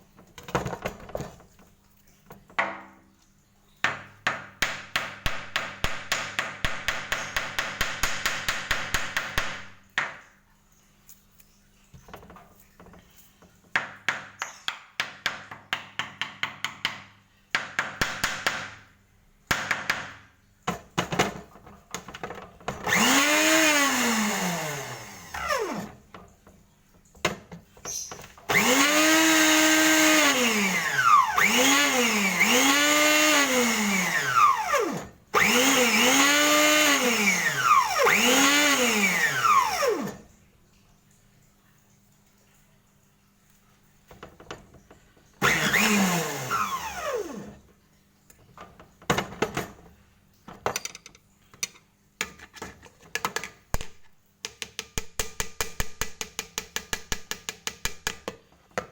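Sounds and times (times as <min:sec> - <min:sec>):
power tool motor whining: 0:22.8 - 0:26.0, 0:27.9 - 0:40.2, 0:45.4 - 0:47.6.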